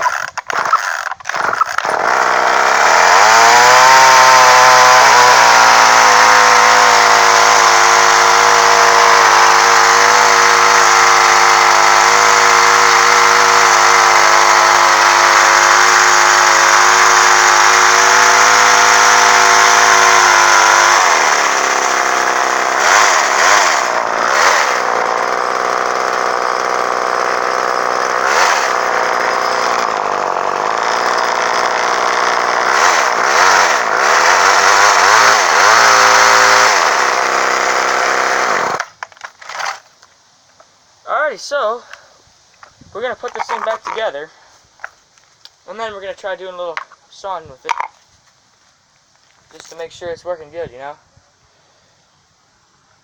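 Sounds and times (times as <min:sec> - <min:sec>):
chainsaw engine revving and running: 0:00.0 - 0:39.6.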